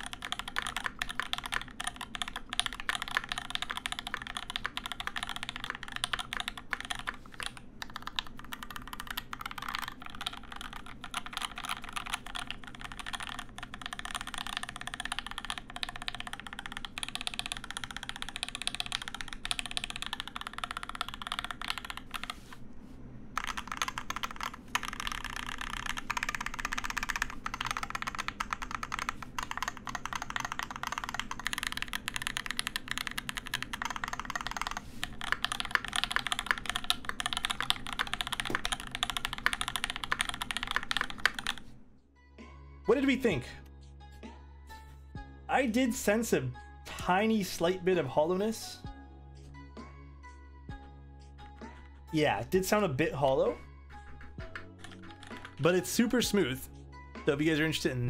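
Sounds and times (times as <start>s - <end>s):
fast typing on mechanical keyboard: 0.0s - 22.5s, 23.4s - 41.7s, 54.0s - 56.5s.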